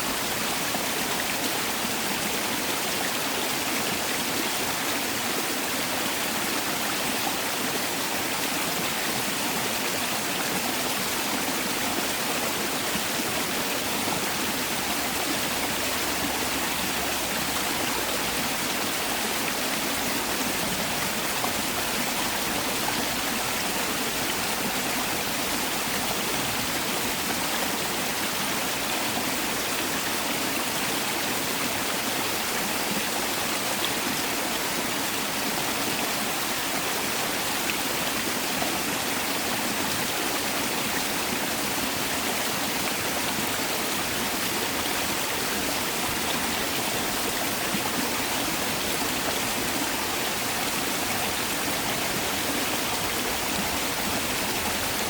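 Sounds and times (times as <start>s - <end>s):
stream rushing over rocks: 0.0s - 55.0s.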